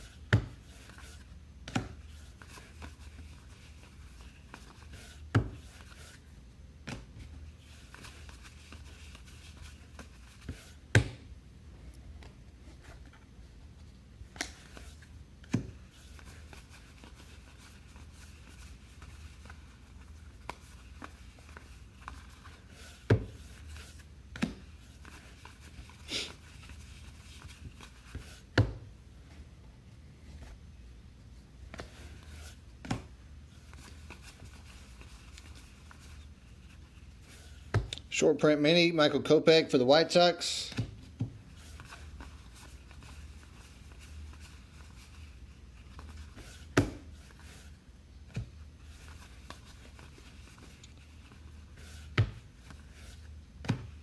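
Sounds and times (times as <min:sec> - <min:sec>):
cards rubbing and shuffling: 0:14.3 - 0:28.6, 0:31.7 - 0:37.8, 0:40.6 - 0:54.0.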